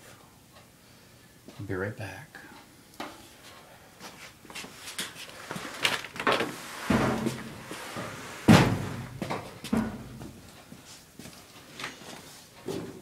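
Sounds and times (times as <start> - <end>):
knocks and thumps: 6.8 - 7.6, 8.4 - 10.4
heavy bang: 8.4 - 10.3.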